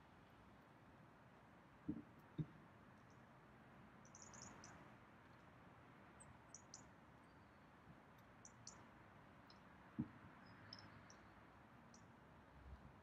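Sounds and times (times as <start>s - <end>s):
faint high-pitched chirps: 4.0s - 4.8s, 6.2s - 7.6s, 9.4s - 12.1s.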